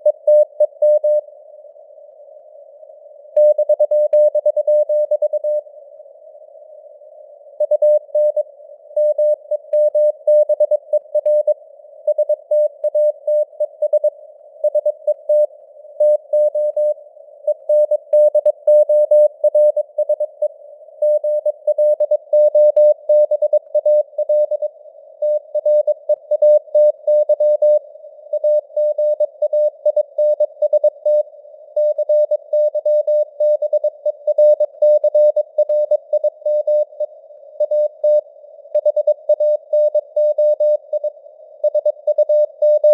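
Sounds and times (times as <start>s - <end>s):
morse code tone: 38.8s - 42.9s.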